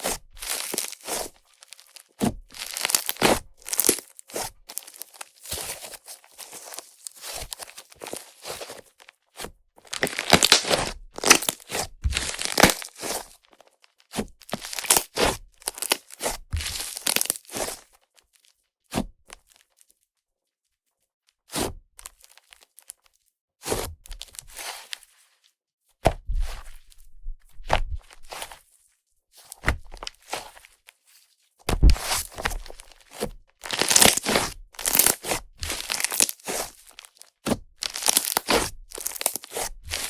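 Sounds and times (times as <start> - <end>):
slime crackling and sizzling: 0.4 - 8.8, 9.9 - 13.2, 14.5 - 17.7, 31.8 - 40.0.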